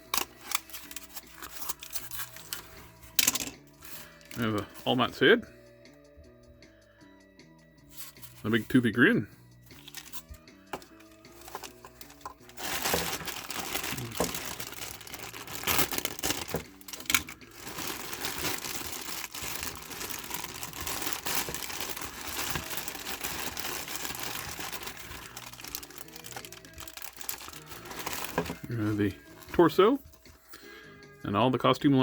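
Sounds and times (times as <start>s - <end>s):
plastic bag crinkling: 9.7s - 29.6s.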